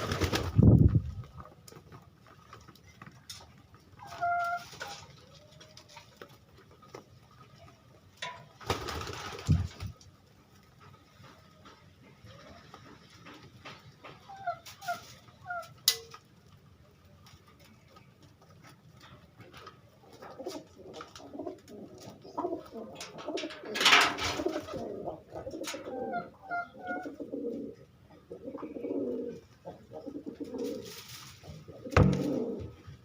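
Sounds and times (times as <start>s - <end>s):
pigeons cooing: 20.1s - 33.0s.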